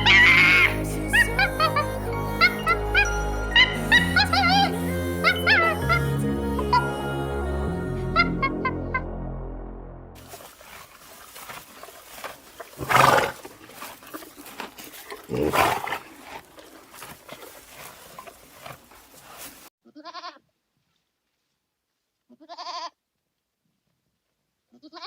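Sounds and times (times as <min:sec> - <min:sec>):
livestock bleating: 0:19.8 - 0:20.4, 0:22.3 - 0:23.0, 0:24.7 - 0:25.0.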